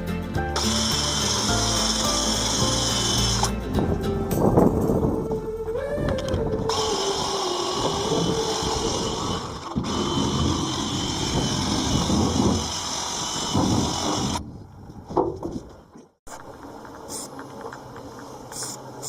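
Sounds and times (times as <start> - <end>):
power tool running: 0.6 - 3.6, 6.7 - 14.4.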